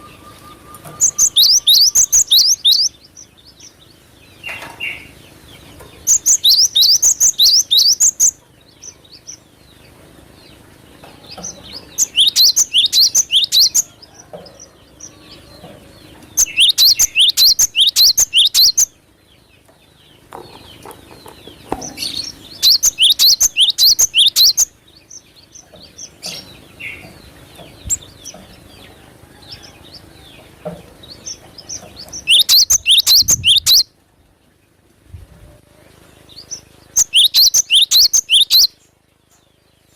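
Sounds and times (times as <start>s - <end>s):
bird singing rapid high notes: 0.0s - 3.1s, 6.1s - 8.4s, 11.8s - 13.9s, 16.4s - 18.9s, 21.9s - 24.8s, 32.2s - 33.9s, 36.4s - 38.8s
faint bird chirps: 0.0s - 3.2s, 16.4s - 18.9s, 21.9s - 24.7s, 31.2s - 33.9s, 35.8s - 39.9s.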